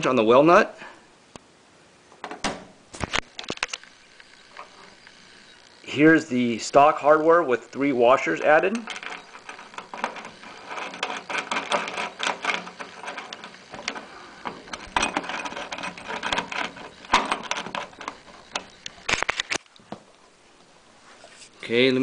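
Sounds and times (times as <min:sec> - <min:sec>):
metallic clinking of bolt and washers: 0:08.2 - 0:19.6.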